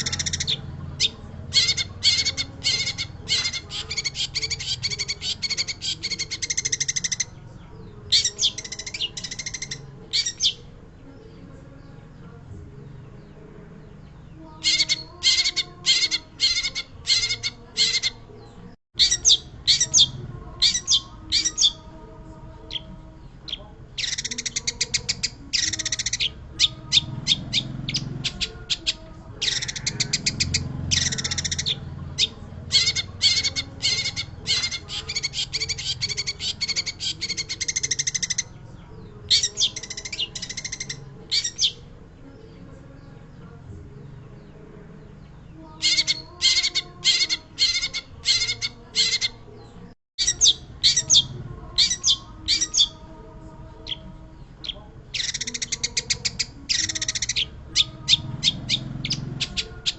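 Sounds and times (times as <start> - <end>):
shrike singing harsh chattering notes: 0.0 - 7.4, 23.5 - 38.5.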